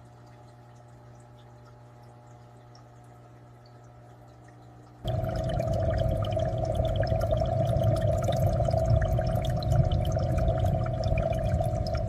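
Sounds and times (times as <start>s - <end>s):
aquarium water bubbling: 0.0s - 12.0s
water drips and splashes: 0.0s - 12.0s
steady hum: 1.0s - 12.0s
low rumble: 5.1s - 12.0s.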